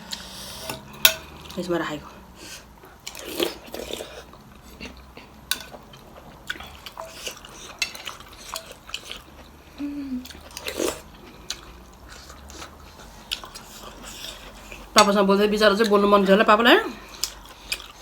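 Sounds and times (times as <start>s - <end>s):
utensils and dishes clinking: 0.6s - 1.6s, 6.5s - 9.2s.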